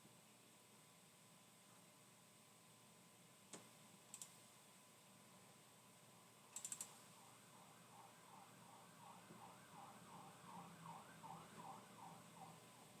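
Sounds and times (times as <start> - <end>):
keyboard or mouse clicks: 3.5 - 4.4, 6.5 - 7.0.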